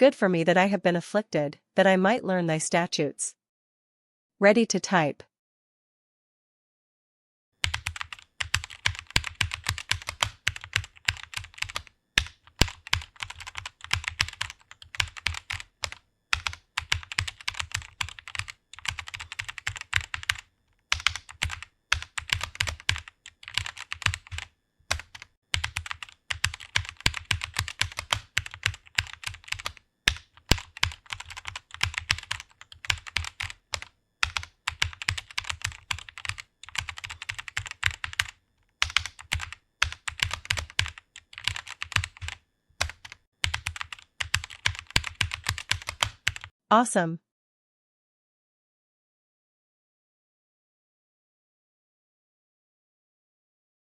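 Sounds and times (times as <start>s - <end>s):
typing on computer keyboard: 7.6s - 46.5s.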